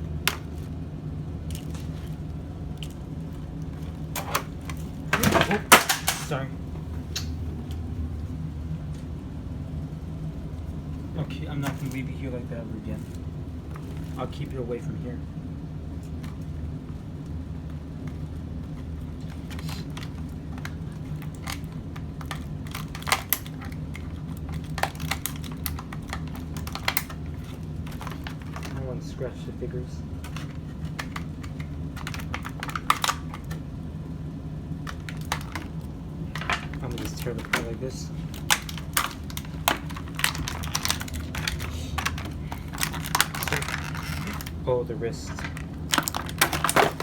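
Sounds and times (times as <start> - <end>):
steady low hum: 0.0 - 47.0
cardboard and plastic crackling: 1.4 - 7.8, 11.2 - 14.6, 17.6 - 29.0, 29.7 - 33.7, 34.7 - 47.0
packaging snapping: 3.9 - 6.5, 19.2 - 28.8, 30.2 - 33.6, 34.8 - 44.6, 45.3 - 47.0.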